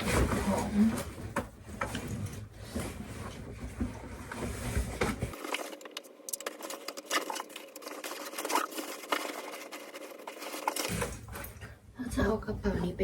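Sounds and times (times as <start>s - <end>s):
bag rustling: 4.3s - 11.6s.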